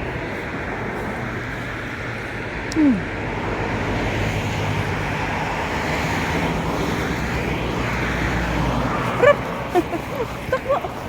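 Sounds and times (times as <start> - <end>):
cars driving past: 0.0 - 11.0.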